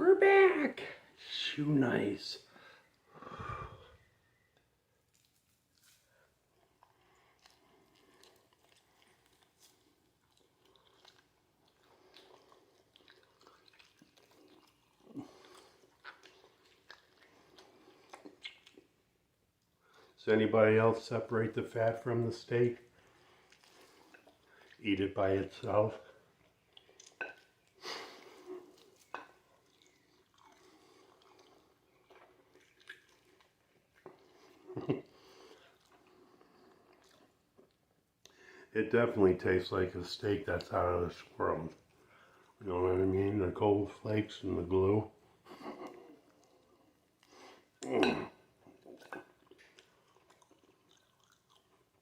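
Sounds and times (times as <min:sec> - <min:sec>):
chewing raw steak: 0:04.3 - 0:20.2, 0:22.0 - 0:38.4, 0:45.2 - 0:52.0
wet mouth clicks: 0:06.8 - 0:18.9, 0:48.7 - 0:51.8.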